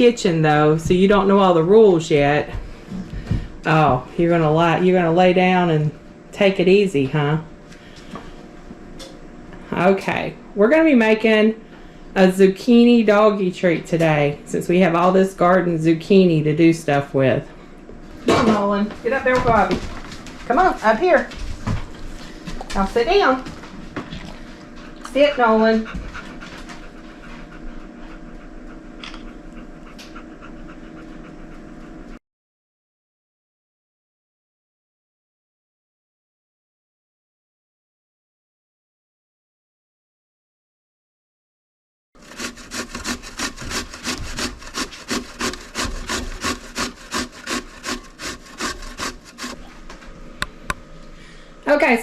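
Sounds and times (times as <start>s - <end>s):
dog panting: 24.8s - 32.2s
grater rasping: 42.2s - 49.6s.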